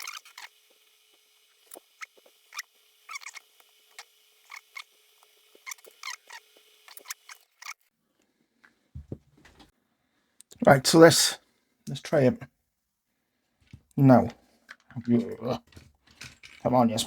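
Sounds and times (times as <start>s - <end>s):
small parts clicking and scratching: 0.0s - 7.9s, 14.6s - 17.0s.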